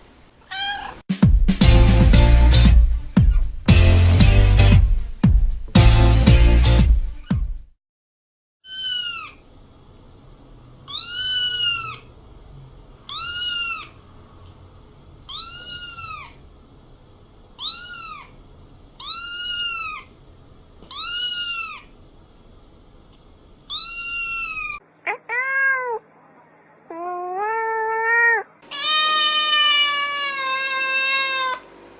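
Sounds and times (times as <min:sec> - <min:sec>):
cat meowing: 0:00.4 - 0:01.0, 0:08.6 - 0:09.4, 0:10.9 - 0:12.1, 0:13.1 - 0:14.0, 0:15.3 - 0:16.4, 0:17.6 - 0:18.4, 0:19.0 - 0:20.1, 0:20.9 - 0:21.9, 0:23.7 - 0:26.1, 0:26.9 - 0:31.6.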